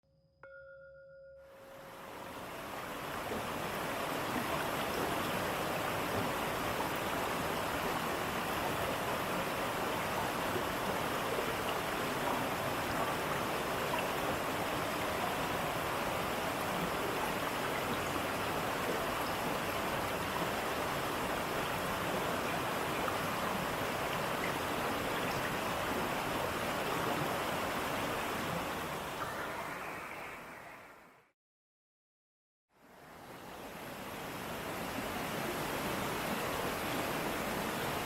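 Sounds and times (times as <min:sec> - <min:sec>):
waterfall rushing: 0:01.7 - 0:30.7.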